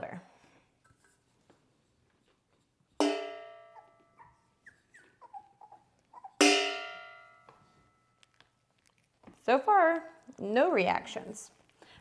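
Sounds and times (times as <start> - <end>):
metal object clanging: 3.0 - 3.8, 6.4 - 7.6
puppies squeaking: 3.6 - 6.6.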